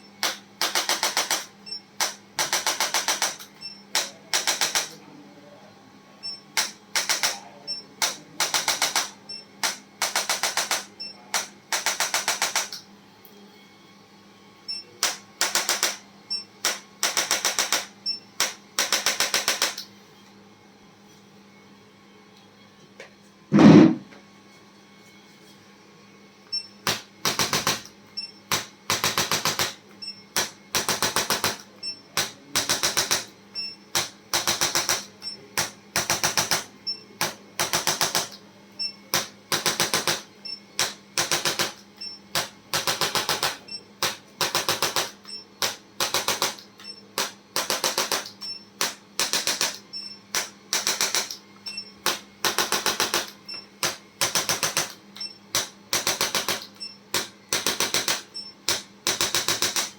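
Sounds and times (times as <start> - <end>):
rapid mechanical tapping: 28.5 - 33.3, 39.1 - 59.9.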